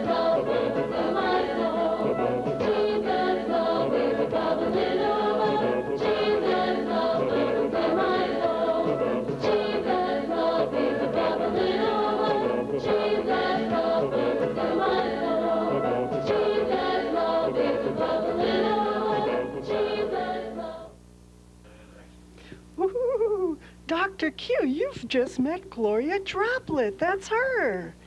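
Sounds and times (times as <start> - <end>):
choir singing: 0.0 - 21.0
faint low hum: 0.0 - 28.0.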